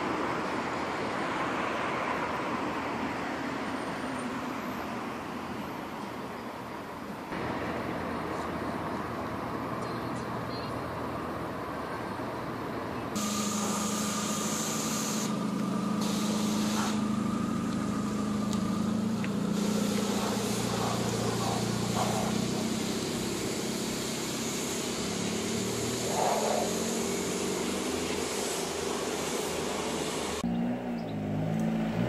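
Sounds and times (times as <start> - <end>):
car engine idling: 6.9 - 30.4.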